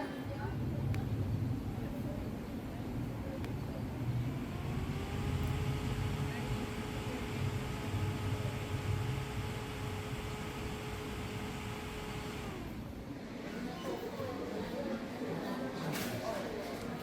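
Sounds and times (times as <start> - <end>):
handheld electric fan motor: 4.1 - 13.0.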